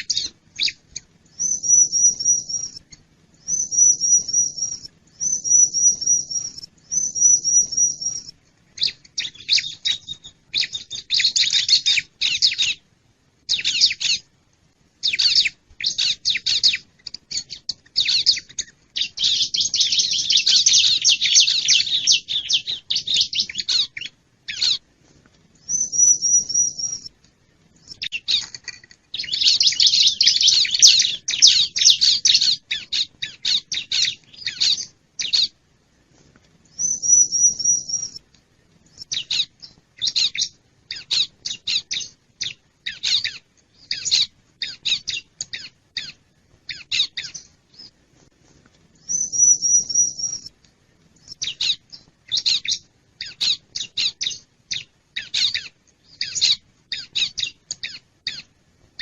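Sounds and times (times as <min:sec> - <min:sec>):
bird dense trills: 0:00.0 - 0:12.8, 0:13.5 - 0:14.3, 0:15.0 - 0:24.8, 0:25.6 - 0:27.1, 0:27.8 - 0:35.6, 0:36.8 - 0:38.2, 0:49.0 - 0:50.5.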